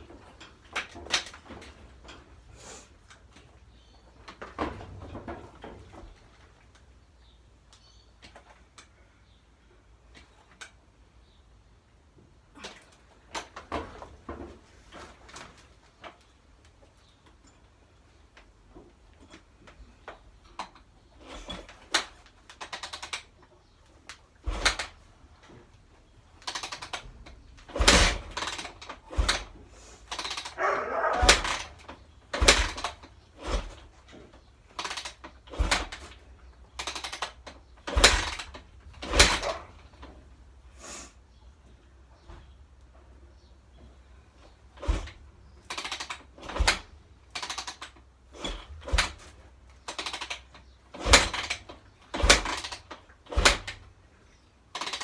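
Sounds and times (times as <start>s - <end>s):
knocks and clanks: 26.4s - 36.2s, 36.8s - 40.2s, 44.8s - 47.8s, 48.4s - 53.9s.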